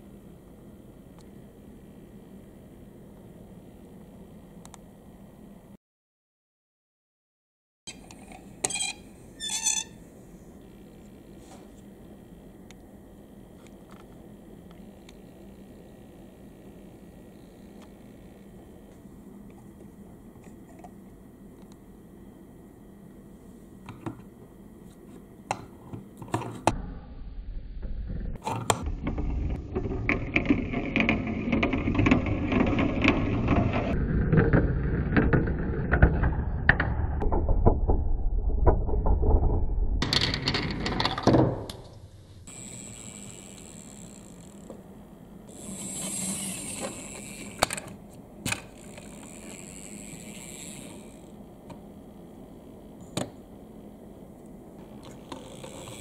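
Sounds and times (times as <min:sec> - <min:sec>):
wooden marbles rolling and clacking: 0:28.7 - 0:41.7.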